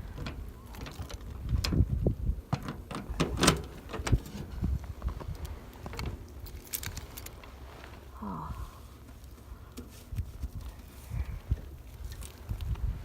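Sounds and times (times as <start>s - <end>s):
wind buffeting microphone: 0.0s - 7.0s, 10.1s - 13.0s.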